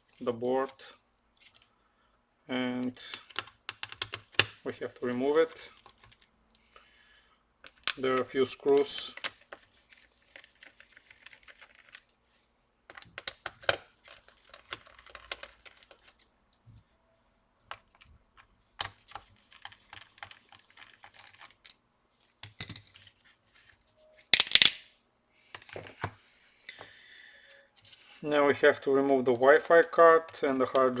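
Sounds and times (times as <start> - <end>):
parts clattering: 24.4 - 24.9.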